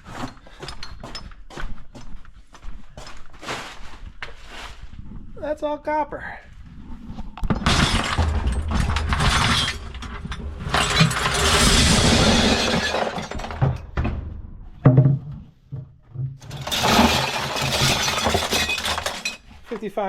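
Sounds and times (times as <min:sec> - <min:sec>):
scrap metal clattering: 0:07.4 - 0:15.4, 0:16.4 - 0:19.7.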